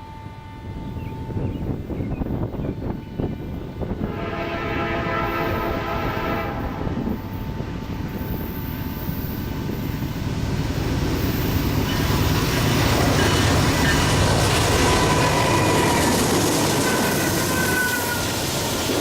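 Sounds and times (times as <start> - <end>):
train rumbling past: 0.0 - 19.0
locomotive horn chord: 4.0 - 7.2.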